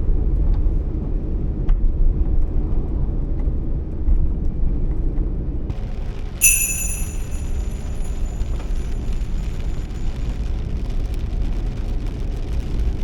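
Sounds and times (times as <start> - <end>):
ringing chime-like tone: 6.4 - 9.1.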